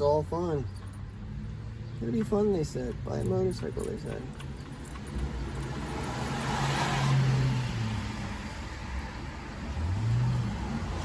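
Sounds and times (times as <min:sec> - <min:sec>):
engine hum rising in pitch: 0:05.3 - 0:11.0
car driving past on wet road: 0:05.6 - 0:08.4.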